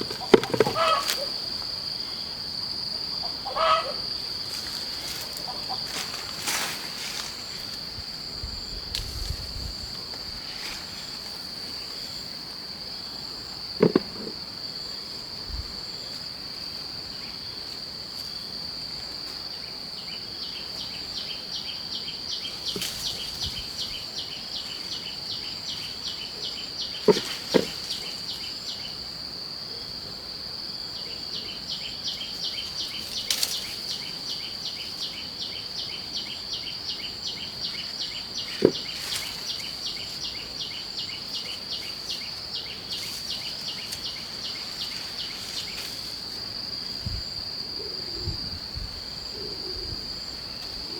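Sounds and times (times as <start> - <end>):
insect drone: 0.0 - 50.9
rapid rhythmic insect chirping: 0.0 - 50.9
sharp knocks: 13.8 - 14.4.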